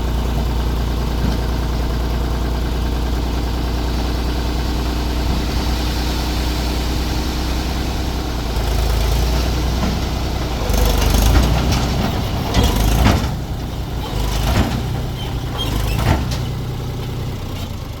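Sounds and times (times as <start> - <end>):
diesel engine running: 0.0 - 18.0
metal knocks and clanks: 9.7 - 16.7.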